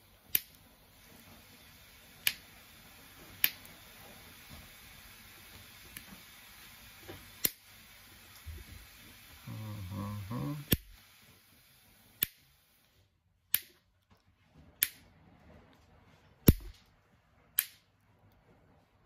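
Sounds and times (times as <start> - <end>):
low voice murmur: 9.4 - 10.7.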